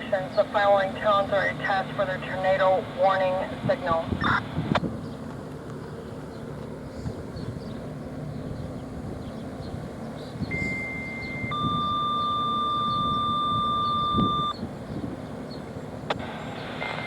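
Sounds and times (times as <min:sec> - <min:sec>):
two-tone paging tones: 0:10.5 - 0:14.6.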